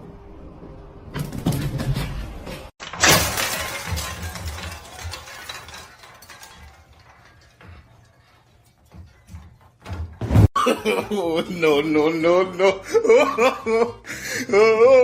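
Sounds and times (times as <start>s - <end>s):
object falling and breaking: 1.1s - 10.5s
clinks and rattles: 1.2s - 10.2s
clattering: 1.2s - 10.5s.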